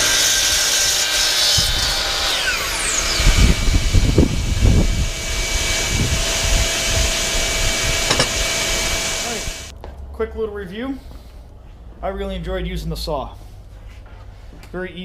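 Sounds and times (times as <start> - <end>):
saw motor spinning down: 0.0 - 9.7.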